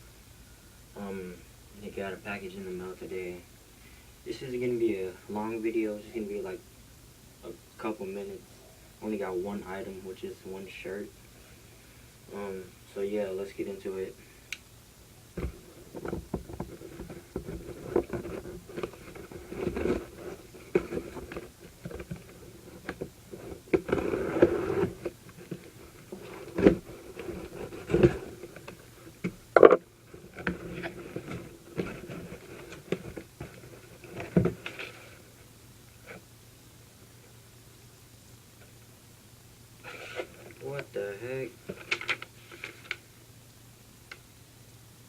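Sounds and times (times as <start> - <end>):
packaging rustling and crinkling: 15.4 - 35.3.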